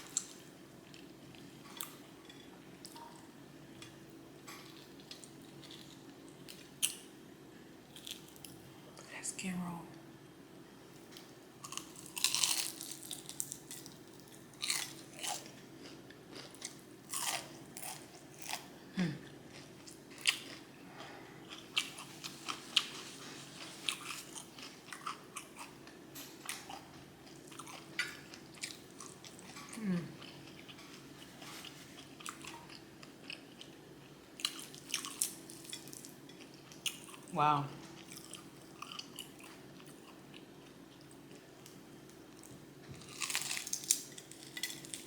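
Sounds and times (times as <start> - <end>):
chewing crispy chicken skin: 4.5 - 7.1, 7.9 - 8.6, 11.1 - 45.0.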